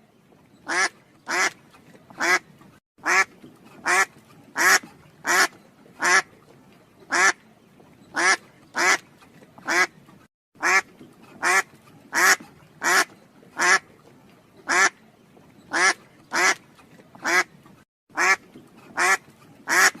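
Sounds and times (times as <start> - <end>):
duck quacking: 0.7 - 1.6, 2.2 - 2.4, 3.0 - 6.3, 7.1 - 7.4, 8.2 - 9.0, 9.6 - 9.9, 10.6 - 13.8, 14.7 - 15.0, 15.7 - 16.6, 17.2 - 17.5, 18.2 - 20.0.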